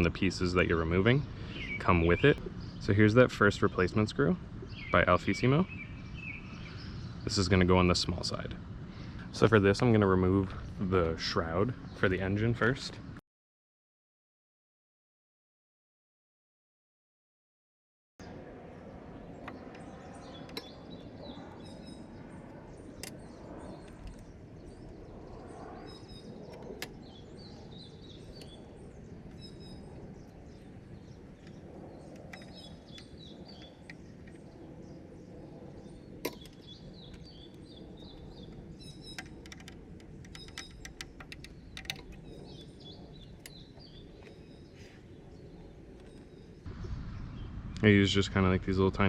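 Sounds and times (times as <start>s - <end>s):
birds chirping: 0.0s - 13.2s, 18.2s - 49.0s
steady low background noise: 0.0s - 13.2s, 18.2s - 49.0s
tools clicking and tapping on plastic: 39.1s - 42.2s.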